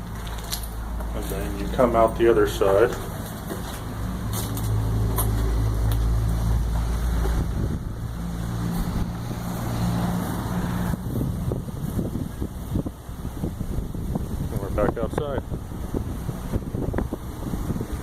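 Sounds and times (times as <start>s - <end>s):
vehicle engine rumbling: 0.0s - 18.0s
wind gusts on microphone: 4.8s - 18.0s.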